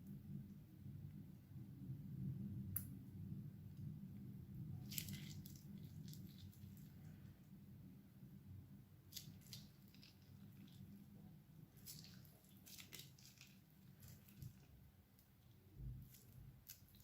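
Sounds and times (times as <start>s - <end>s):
low steady hum: 0.0s - 17.0s
slime crackling when squished: 4.8s - 7.0s, 9.1s - 11.1s, 11.7s - 17.0s.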